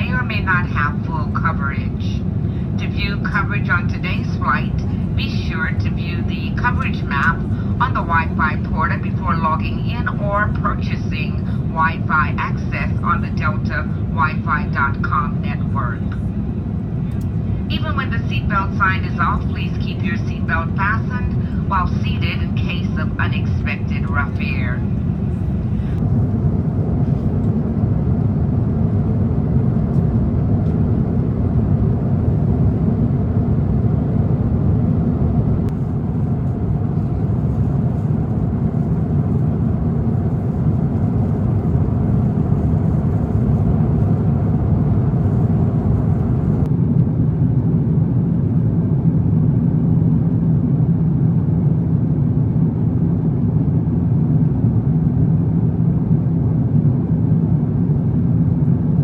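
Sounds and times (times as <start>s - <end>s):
rushing air in cabin: 0.0s - 46.8s
airplane engines rumbling: 0.0s - 59.0s.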